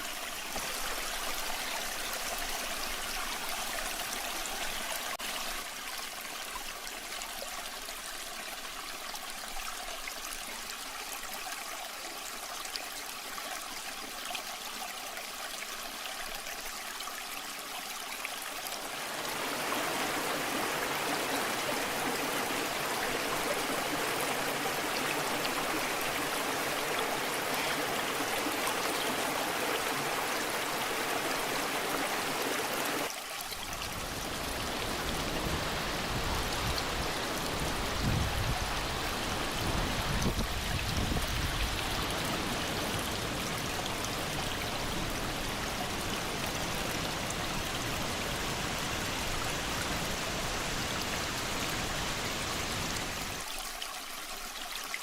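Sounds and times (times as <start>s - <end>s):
waterfall rushing: 18.8s - 33.1s, 33.8s - 53.5s.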